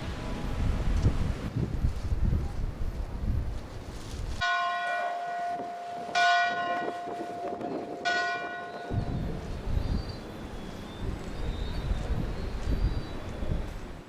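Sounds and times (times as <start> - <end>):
wind buffeting microphone: 0.0 - 4.5, 5.5 - 14.0
church bell striking: 4.4 - 9.2.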